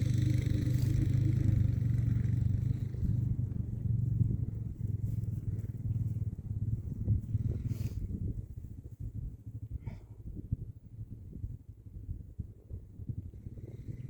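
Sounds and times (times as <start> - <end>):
small vehicle engine idling: 0.0 - 8.1.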